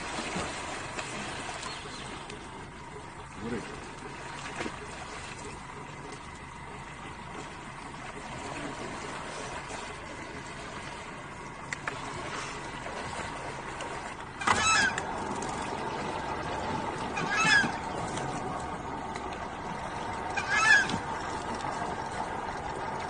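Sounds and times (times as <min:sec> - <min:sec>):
bird call: 0:14.4 - 0:15.0, 0:17.1 - 0:18.0.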